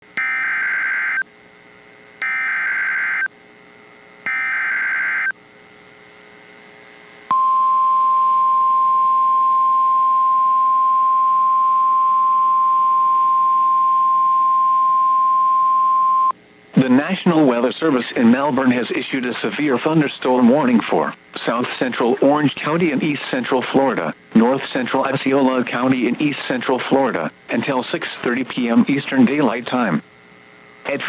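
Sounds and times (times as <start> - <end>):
digital data tone bursts: 0.2 - 1.2, 2.2 - 3.3, 4.3 - 5.3
steady single-pitch alarm tone: 0.2 - 1.3, 2.2 - 3.3, 4.2 - 5.4, 7.3 - 16.3.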